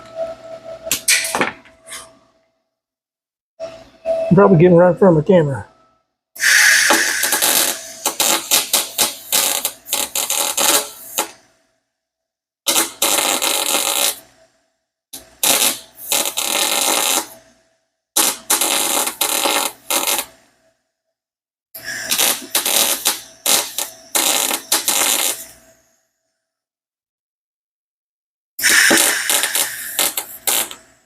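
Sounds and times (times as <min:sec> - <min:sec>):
welder arc crackling: 0:06.9 - 0:11.3, 0:12.7 - 0:14.2, 0:15.4 - 0:17.4, 0:18.2 - 0:20.3, 0:22.0 - 0:25.5, 0:28.6 - 0:30.8.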